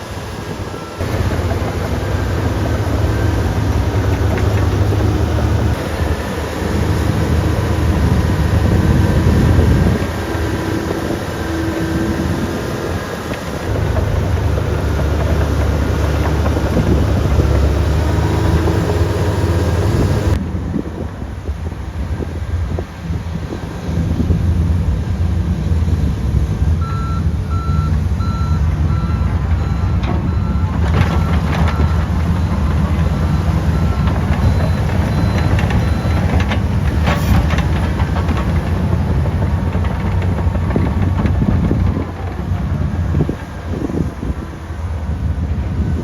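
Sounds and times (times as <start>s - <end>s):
bulldozer diesel engine running: 0.0s - 46.0s
backup alarm beeping: 26.8s - 37.8s.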